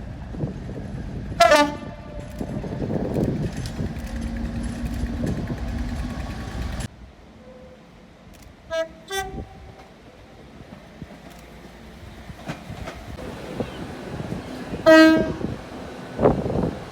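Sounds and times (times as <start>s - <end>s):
train rumbling: 0.0s - 16.9s
train horn toots: 1.4s - 2.6s, 8.7s - 9.8s, 14.8s - 15.6s.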